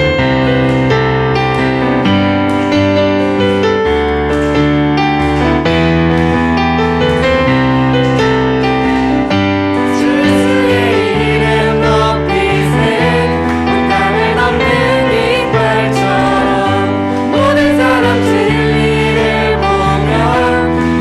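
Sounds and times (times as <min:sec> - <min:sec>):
keyboard chords: 0:00.0 - 0:21.0
voices singing: 0:05.0 - 0:21.0.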